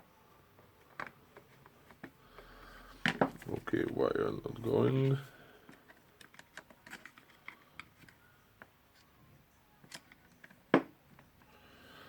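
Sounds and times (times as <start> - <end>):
plastic parts clicking and tapping: 0.8 - 3.6, 5.0 - 9.0, 9.8 - 11.5.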